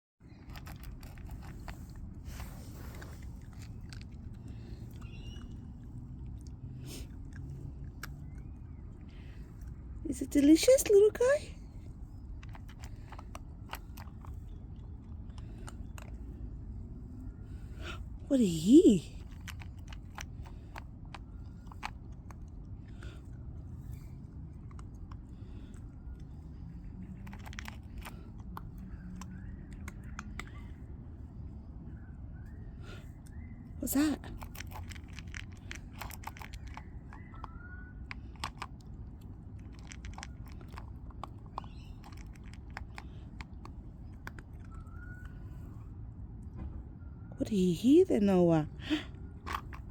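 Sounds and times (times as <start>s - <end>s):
puppy chewing a snack: 0.2s - 9.8s, 11.8s - 16.4s, 19.1s - 30.9s, 33.0s - 45.8s.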